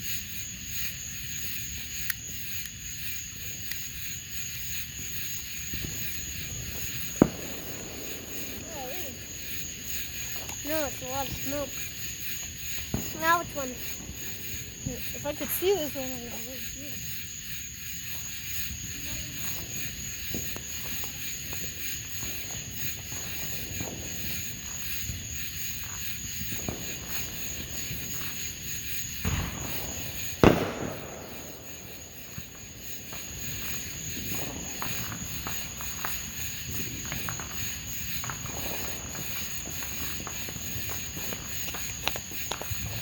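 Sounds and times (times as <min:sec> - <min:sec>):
night insects chirring: 0:00.0 - 0:43.0
firework bang: 0:05.7 - 0:16.8, 0:22.2 - 0:43.0.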